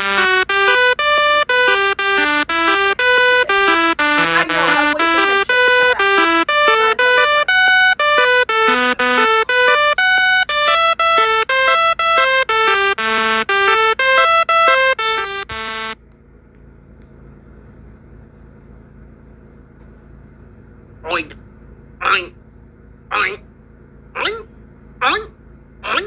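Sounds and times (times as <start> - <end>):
electronic beeping melody: 0.0 - 16.0.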